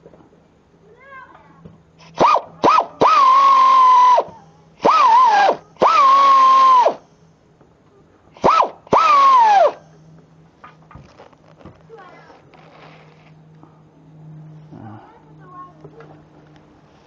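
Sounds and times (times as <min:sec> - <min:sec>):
air ratchet wrench whining: 0:02.0 - 0:07.2, 0:08.4 - 0:10.1.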